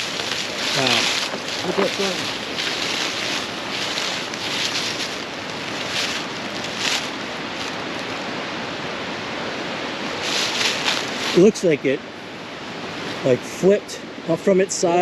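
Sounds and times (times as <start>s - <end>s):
footsteps rustling through brush: 0.0s - 8.3s, 10.0s - 11.5s
waterfall rushing: 0.0s - 13.7s.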